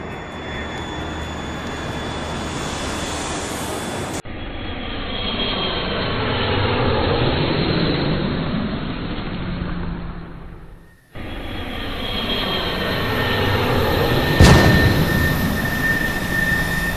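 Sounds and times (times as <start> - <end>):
jet engine roar with whine: 0.0 - 16.9
jet noise: 0.0 - 16.9.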